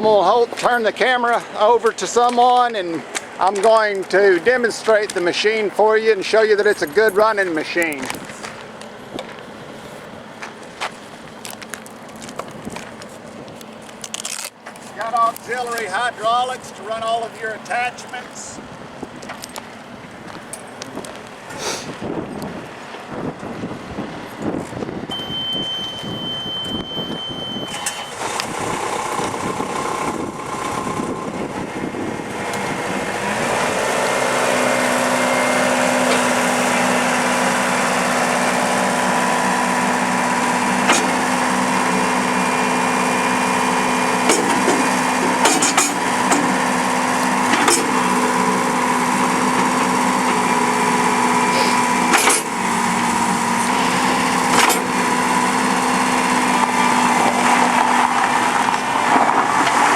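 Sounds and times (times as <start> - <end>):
diesel engine revving: 0.0 - 59.9
steady beep: 25.1 - 28.2
machine clanking: 37.7 - 57.7.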